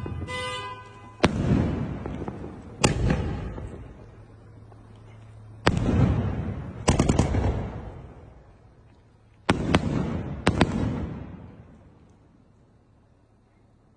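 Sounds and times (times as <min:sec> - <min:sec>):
rumbling echo: 0:00.0 - 0:08.8
fireworks bangs: 0:00.0 - 0:12.4.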